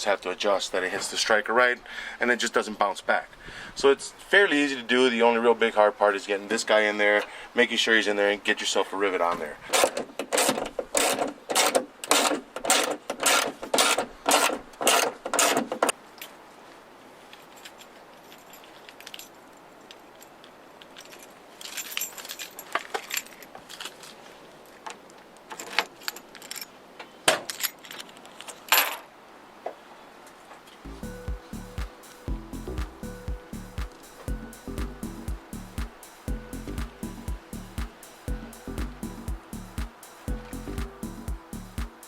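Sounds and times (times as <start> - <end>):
hand tools clicking on metal: 9.7 - 15.9.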